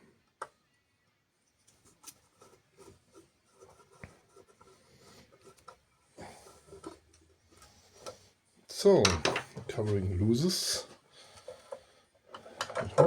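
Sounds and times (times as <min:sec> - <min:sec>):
small clicks and scrapes on metal cover: 0:01.7 - 0:08.3.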